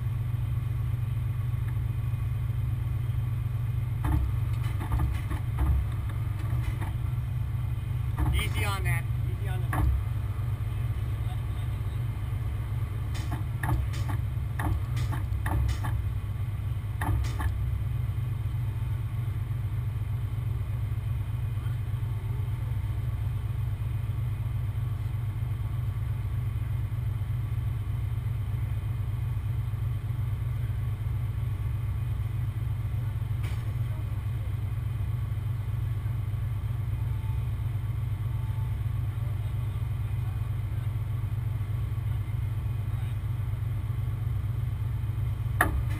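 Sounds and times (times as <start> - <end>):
diesel truck engine droning: 0.0 - 45.9
sharp metallic clanks: 13.1 - 16.1, 17.0 - 17.7.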